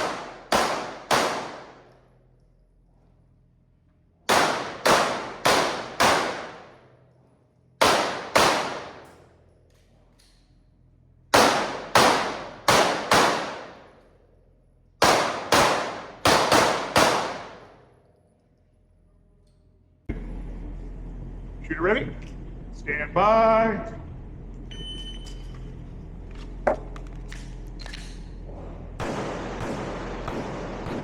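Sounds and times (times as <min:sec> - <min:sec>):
pistol shots: 0:00.0 - 0:02.0, 0:04.3 - 0:06.8, 0:07.8 - 0:09.2, 0:11.3 - 0:14.0, 0:15.0 - 0:17.9, 0:29.0 - 0:31.0.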